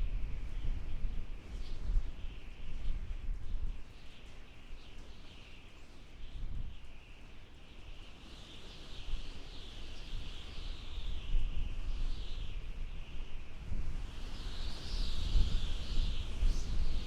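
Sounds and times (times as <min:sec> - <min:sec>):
wind howling: 0:09.2 - 0:17.0.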